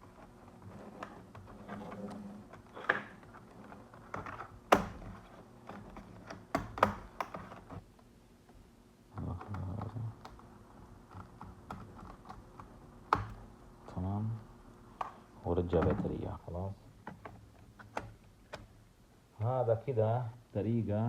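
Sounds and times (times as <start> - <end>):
plastic clicks and knocks: 0.9 - 7.8, 9.2 - 13.4.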